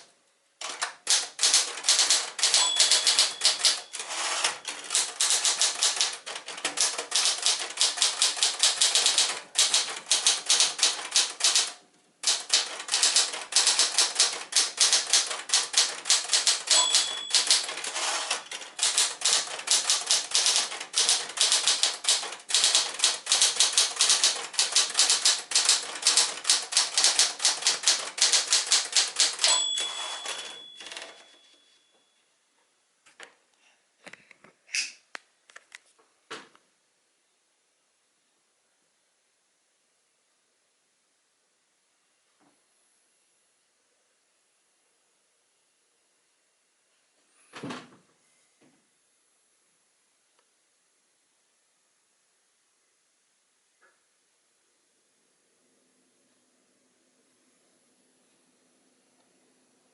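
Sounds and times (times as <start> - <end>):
typewriter margin bell ringing: 0.6 - 11.7, 12.3 - 32.1
typewriter keystrokes: 0.6 - 31.2.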